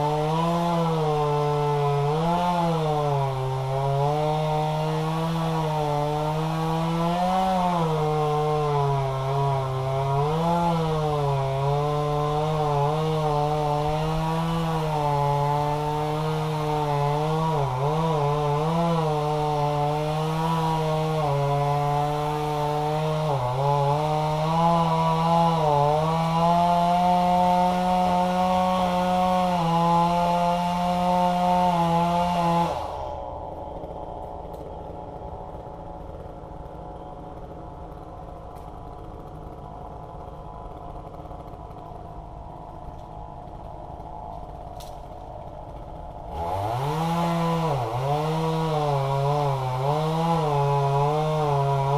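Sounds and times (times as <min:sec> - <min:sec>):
chainsaw running at full throttle: 0:00.0 - 0:51.9
low engine hum: 0:32.9 - 0:48.1.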